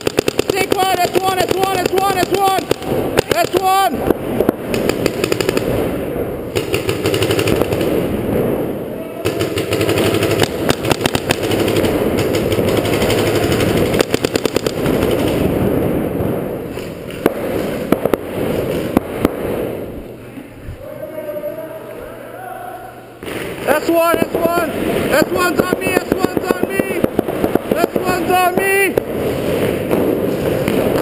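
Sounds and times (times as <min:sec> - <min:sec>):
paintball markers firing: 0:00.0 - 0:05.8, 0:06.6 - 0:08.0, 0:09.3 - 0:15.5, 0:24.3 - 0:31.0.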